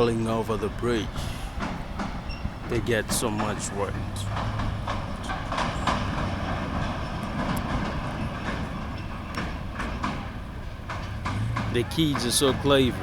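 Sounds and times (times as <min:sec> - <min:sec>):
vehicle rumbling across bridge: 0:00.0 - 0:13.0
knocks and clanks from deck: 0:01.6 - 0:12.7.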